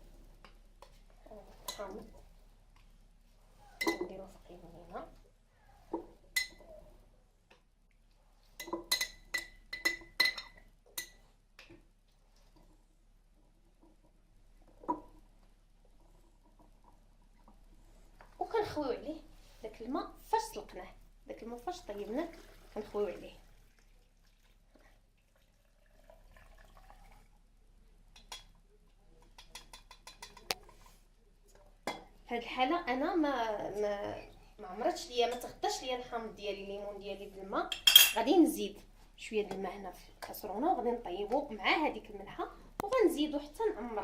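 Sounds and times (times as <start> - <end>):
water trickling into glass jar: 21.9 - 27.3.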